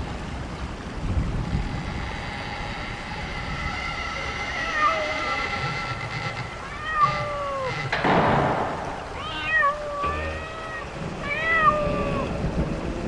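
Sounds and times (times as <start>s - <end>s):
cat meowing: 4.5s - 5.5s, 6.6s - 7.9s, 9.0s - 12.4s.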